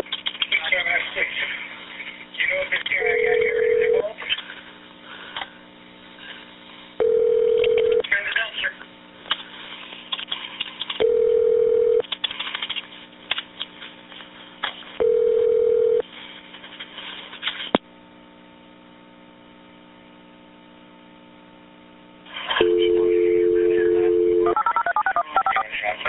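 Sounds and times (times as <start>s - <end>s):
phone line crackle: 2.9s - 4.0s
faint phone line hum: 2.9s - 4.2s, 7.0s - 8.0s, 11.0s - 12.0s, 15.0s - 16.1s, 20.8s - 25.8s
telephone ringing tone: 3.0s - 4.0s, 7.0s - 8.0s, 11.0s - 12.0s, 15.0s - 16.0s, 22.6s - 25.6s
two-note dial tone: 7.0s - 8.0s, 22.6s - 24.9s.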